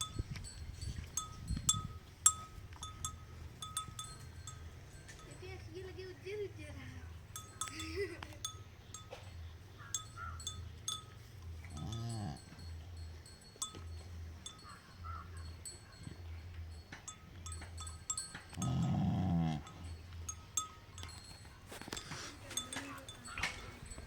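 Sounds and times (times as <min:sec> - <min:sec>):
bell clinking: 0:00.0 - 0:06.4, 0:07.3 - 0:24.0
cattle calling: 0:07.2 - 0:24.0.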